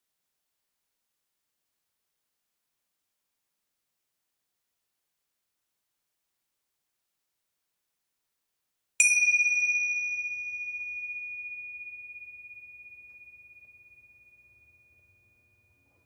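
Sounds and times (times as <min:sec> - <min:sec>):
meditation bell ringing: 0:09.0 - 0:16.0.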